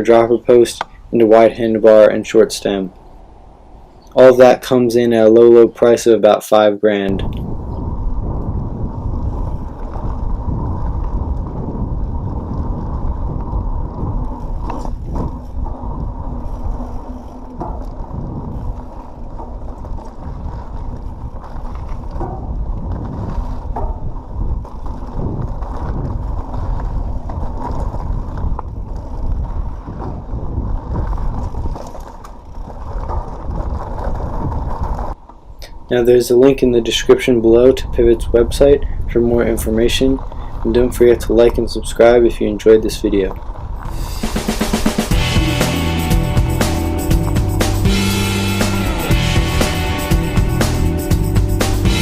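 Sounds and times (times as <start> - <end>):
bike tyres rumbling on dirt: 7.0 - 52.0
bike drivetrain and frame rattle: 7.1 - 35.6, 36.2 - 45.2.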